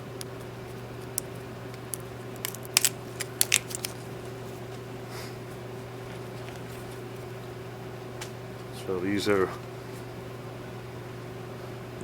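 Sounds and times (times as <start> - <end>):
steady low hum: 0.0 - 12.0
wrapping tearing and crinkling: 0.2 - 4.7.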